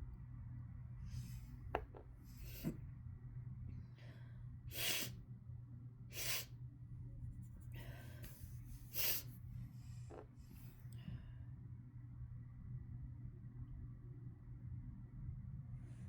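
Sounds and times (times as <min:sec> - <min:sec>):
person sneezing: 0:04.7 - 0:05.1.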